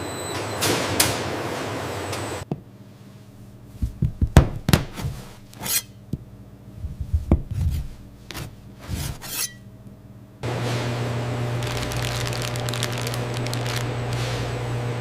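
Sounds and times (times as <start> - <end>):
faint machine hum: 0.0 - 15.0
knocks and taps: 3.8 - 4.8.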